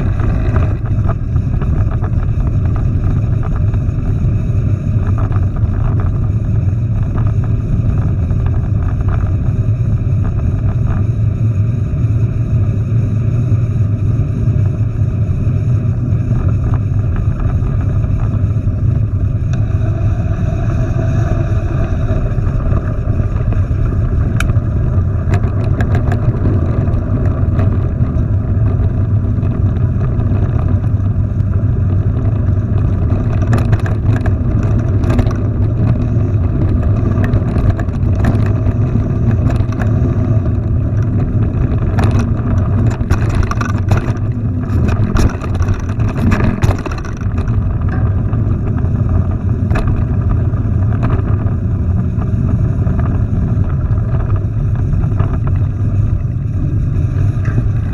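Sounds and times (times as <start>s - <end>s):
wind rumble on camera: 0.0s - 57.9s
clicks and rattles: 24.3s - 30.7s, 32.8s - 48.8s.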